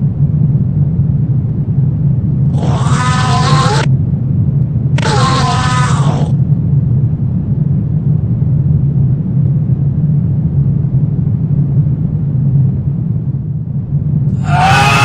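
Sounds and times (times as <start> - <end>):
low rumbling ambient drone: 0.0 - 15.0.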